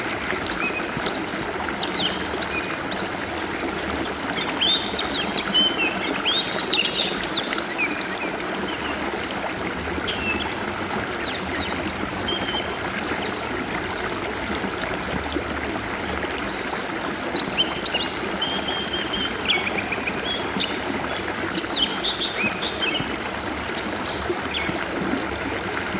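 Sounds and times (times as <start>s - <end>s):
stream trickling: 0.0s - 25.9s
bird singing whistles and chirps: 1.8s - 9.0s, 10.1s - 10.5s, 16.5s - 21.0s, 21.6s - 23.1s.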